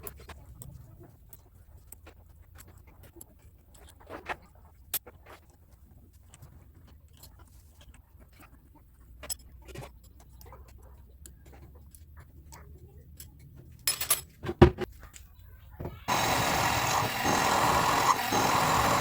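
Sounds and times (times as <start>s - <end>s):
light clicks and taps of tools: 0.0s - 14.3s.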